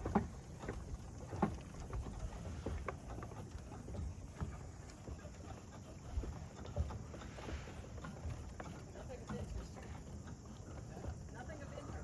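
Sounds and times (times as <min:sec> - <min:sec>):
footsteps on wooden boards: 0:00.0 - 0:05.3.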